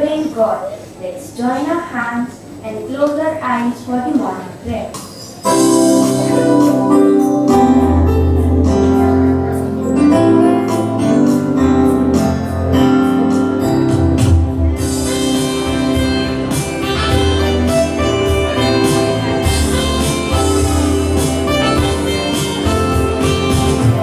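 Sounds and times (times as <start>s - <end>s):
instrumental music with held chords: 5.5s - 24.0s.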